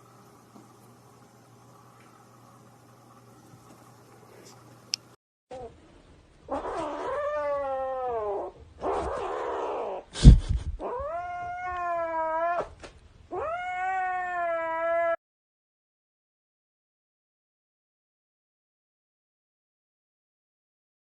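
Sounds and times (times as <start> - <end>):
cat yowling: 6.5 - 10.1, 10.8 - 15.2.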